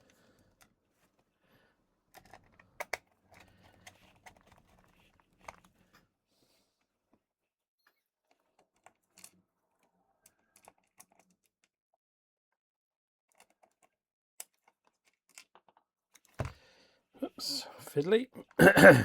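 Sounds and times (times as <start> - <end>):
plastic parts clicking: 2.1 - 5.7, 13.3 - 16.6.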